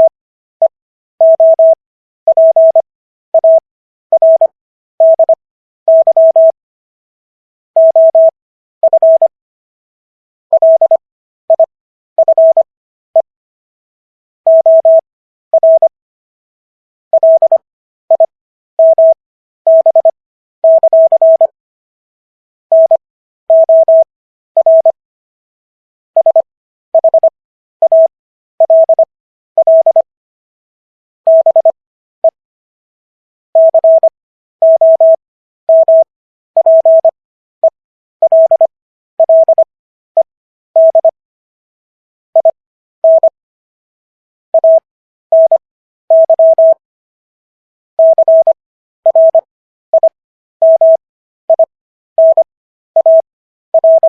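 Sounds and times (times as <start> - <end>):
morse code beeps: 0.0 - 2.8, 3.4 - 6.6, 7.8 - 9.3, 10.5 - 13.3, 14.5 - 15.0, 15.6 - 15.9, 17.2 - 21.6, 22.7 - 25.0, 26.2 - 30.1, 31.3 - 32.4, 33.6 - 41.2, 42.4 - 43.4, 44.6 - 46.8, 48.0 - 54.0.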